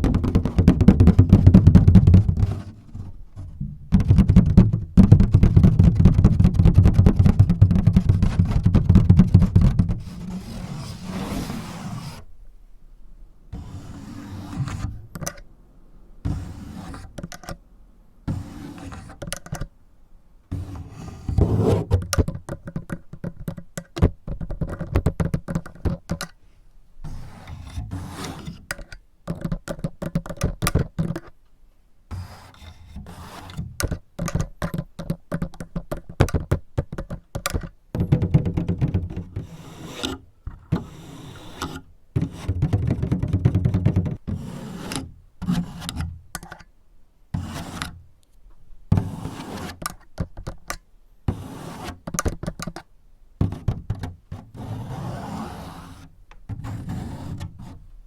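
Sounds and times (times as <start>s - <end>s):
fingers scraping a surface: 5.4s - 12.2s, 13.6s - 15.0s, 16.3s - 17.2s, 20.5s - 22.0s, 27.0s - 28.7s, 32.1s - 33.9s, 38.0s - 46.0s, 49.0s - 50.0s, 51.3s - 52.2s, 54.3s - 57.8s.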